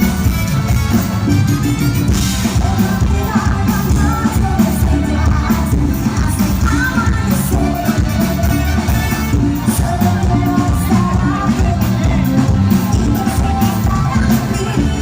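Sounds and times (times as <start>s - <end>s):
bass: 0.0s - 15.0s
person singing: 1.2s - 15.0s.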